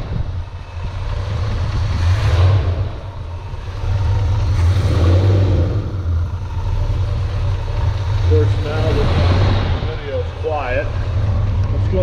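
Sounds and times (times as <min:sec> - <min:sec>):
engine running: 0:00.0 - 0:12.0.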